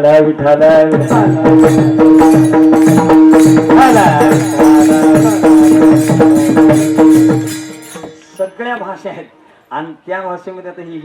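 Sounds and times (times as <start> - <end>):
fast percussion strokes: 0.7 - 9.0
gliding melody line: 1.0 - 8.6.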